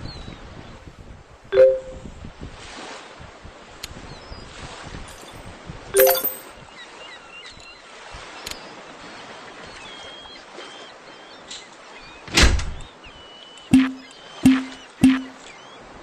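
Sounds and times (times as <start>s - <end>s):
outdoor background noise: 0.0s - 16.0s
short high chirps: 1.6s - 2.1s, 6.0s - 6.5s, 13.7s - 15.4s.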